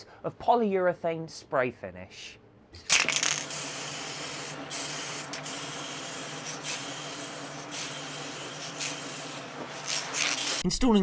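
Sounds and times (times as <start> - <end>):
spray finish hissing: 3.4 - 10.6.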